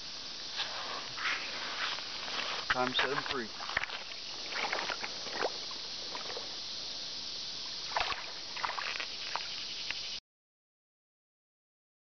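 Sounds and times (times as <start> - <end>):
creek water rushing: 0.4 - 9.7
sharp splashes in water: 3.1 - 6.5, 7.8 - 9.6.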